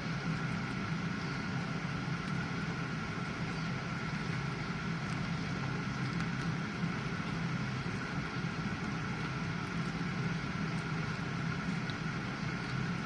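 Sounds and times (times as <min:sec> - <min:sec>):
dishwasher pump hum: 0:00.0 - 0:13.0.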